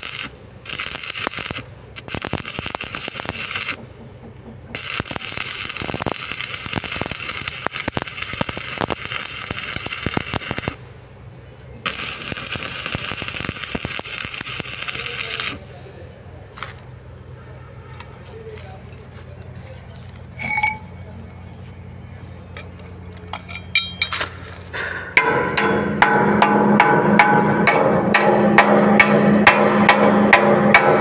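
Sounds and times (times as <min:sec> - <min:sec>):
welding arc crackling: 0:00.0 - 0:11.0, 0:11.8 - 0:15.8.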